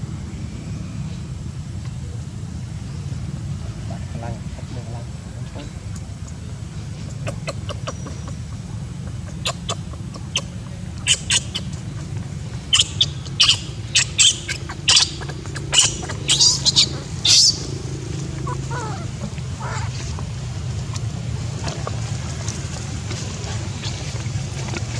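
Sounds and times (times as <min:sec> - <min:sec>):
steady low hum: 0:00.0 - 0:24.9
high-pitched chirping calls: 0:07.0 - 0:21.0.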